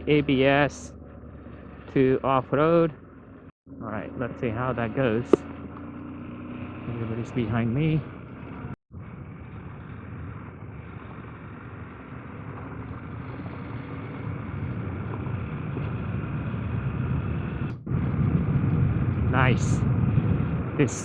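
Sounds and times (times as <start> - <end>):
motorcycle engine running: 0.0 - 21.0
wind rushing: 13.2 - 21.0.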